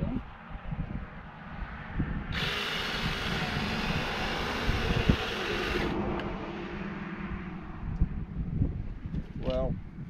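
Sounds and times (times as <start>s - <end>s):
low engine hum: 0.0s - 10.0s
small chainsaw cutting: 2.3s - 6.0s.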